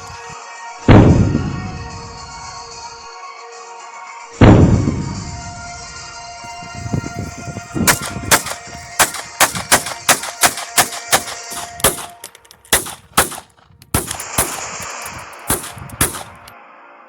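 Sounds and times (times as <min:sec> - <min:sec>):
pistol shots: 0:07.8 - 0:16.5.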